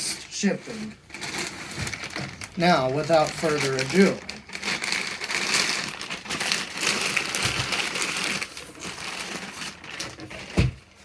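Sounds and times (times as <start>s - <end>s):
packaging crinkling: 0.6s - 11.0s.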